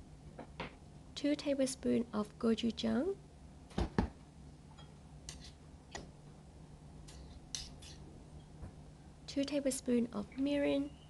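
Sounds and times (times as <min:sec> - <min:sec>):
spoon scraping: 0:05.3 - 0:05.6.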